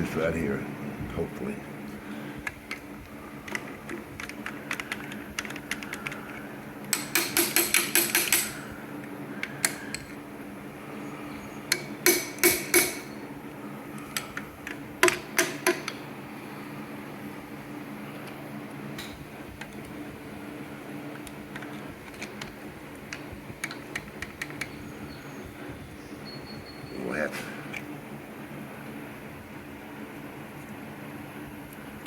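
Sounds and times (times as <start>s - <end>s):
hammer tapping on metal: 6.9s - 8.6s, 11.7s - 13.1s.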